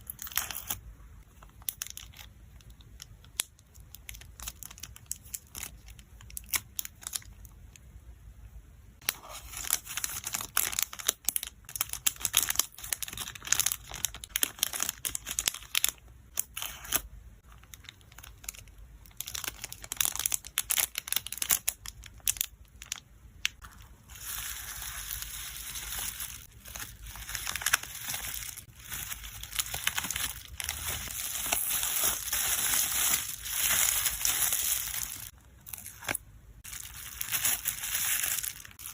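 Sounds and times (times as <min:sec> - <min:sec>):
plastic packaging crinkling: 0:01.4 - 0:07.6, 0:09.0 - 0:38.9.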